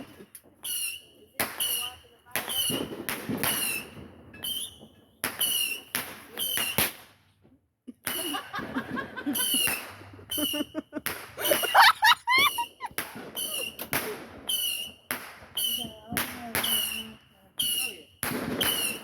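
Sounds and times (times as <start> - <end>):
fireworks bangs with whine: 1.5 - 4.6, 18.2 - 19.0.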